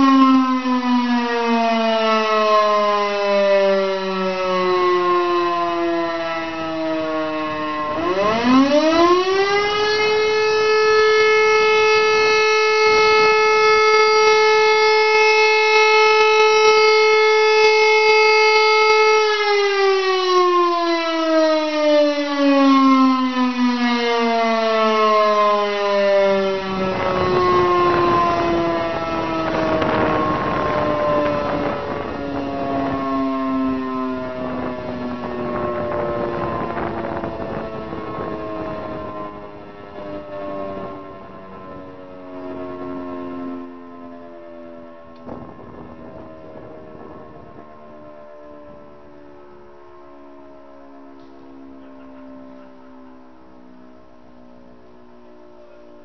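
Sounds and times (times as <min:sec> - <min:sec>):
electric motor siren wailing: 0:00.0 - 0:56.0.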